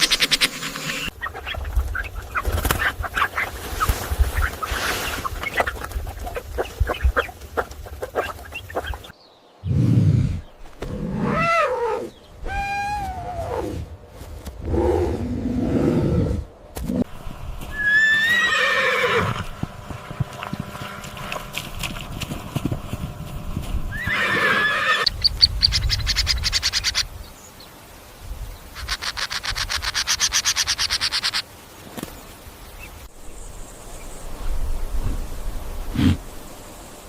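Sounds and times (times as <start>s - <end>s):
horse whinnying: 17.7s - 19.5s, 23.9s - 25.1s.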